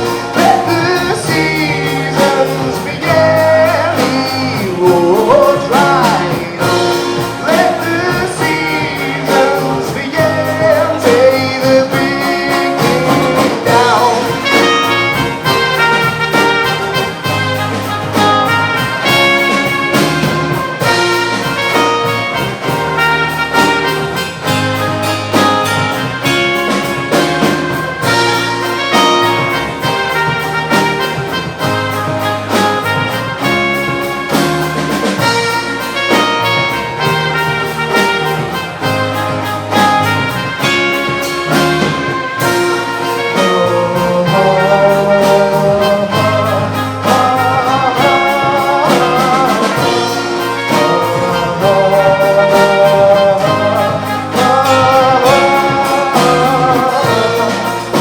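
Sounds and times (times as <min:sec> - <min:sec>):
live band with brass: 0:00.0 - 0:58.0
melody with vibrato: 0:00.0 - 0:58.0.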